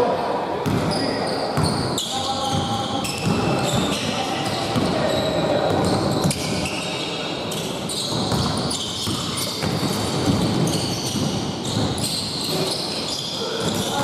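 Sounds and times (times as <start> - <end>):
players' voices: 0.0 - 9.9
basketball bouncing on court: 0.6 - 1.0, 1.6 - 6.7, 7.9 - 12.6
shoe squeaks: 0.9 - 14.0.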